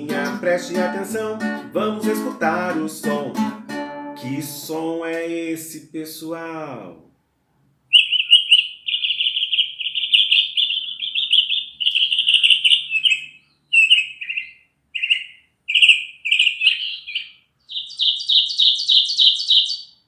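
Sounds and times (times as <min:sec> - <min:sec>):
songbird trilled warbling: 0:07.9 - 0:20.0.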